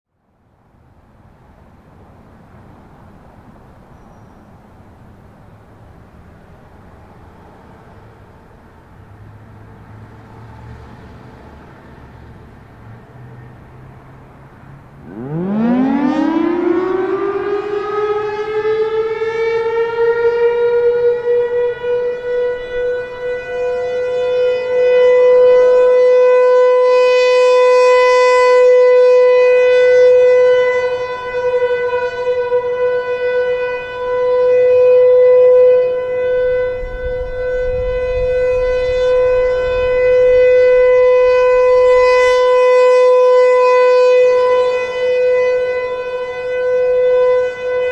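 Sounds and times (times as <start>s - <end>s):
warning siren wailing: 14.6s - 47.9s.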